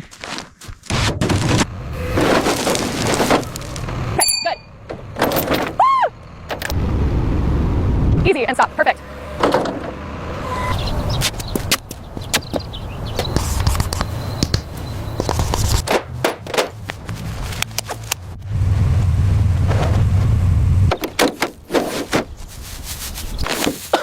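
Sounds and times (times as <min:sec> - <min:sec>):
low mechanical rumble: 0:01.6 - 0:11.2, 0:14.0 - 0:21.0
sharp knocks and clanks: 0:09.4 - 0:10.0, 0:11.2 - 0:18.2.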